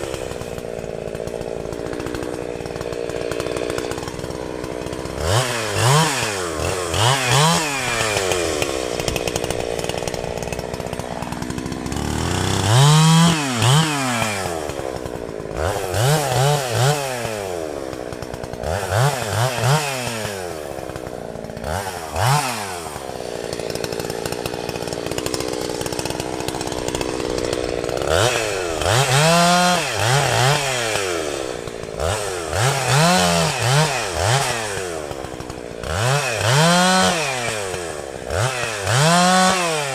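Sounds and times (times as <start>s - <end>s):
chainsaw revving: 0.0s - 39.9s.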